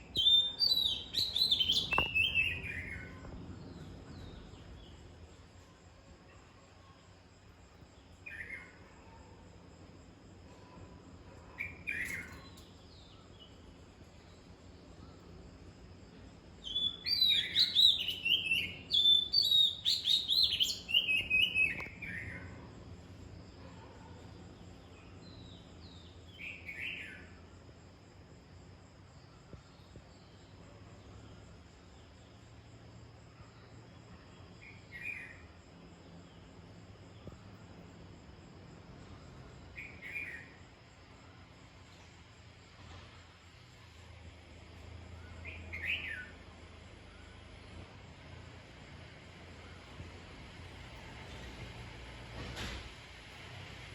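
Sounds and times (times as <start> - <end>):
bird chirping: 0.0 - 5.6, 11.5 - 15.3, 16.6 - 22.7, 45.1 - 47.6.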